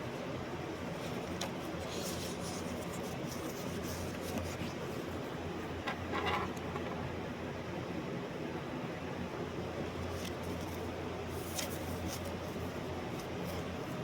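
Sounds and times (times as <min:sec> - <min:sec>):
rustling and scraping: 0:00.8 - 0:05.2, 0:05.9 - 0:07.0.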